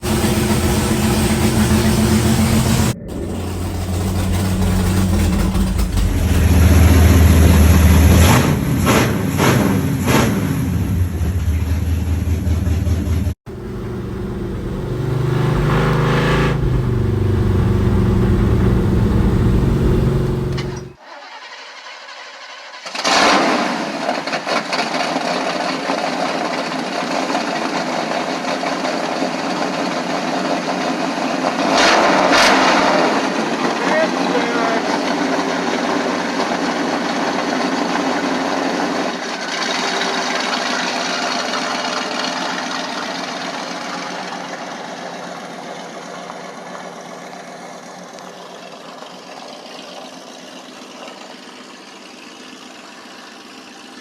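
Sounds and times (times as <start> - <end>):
motor engines revving: 0.0 - 21.0.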